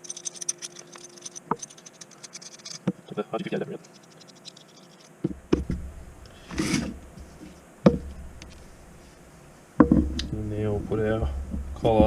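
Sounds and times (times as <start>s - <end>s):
metal parts and cable rubbing: 0.0s - 12.0s
low handling rumble: 5.3s - 12.0s.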